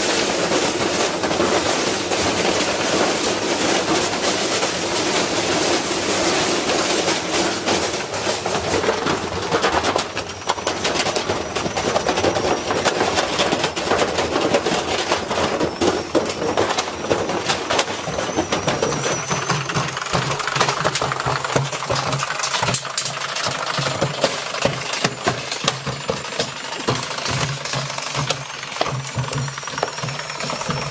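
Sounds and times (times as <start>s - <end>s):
brick banging in washing machine drum: 6.7s - 30.9s.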